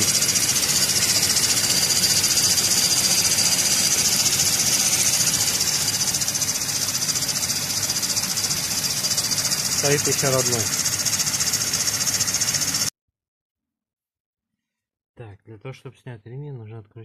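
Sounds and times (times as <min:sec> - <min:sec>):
belt pulley high-pitched hiss: 0:00.0 - 0:12.9
diesel engine hum: 0:00.0 - 0:12.9.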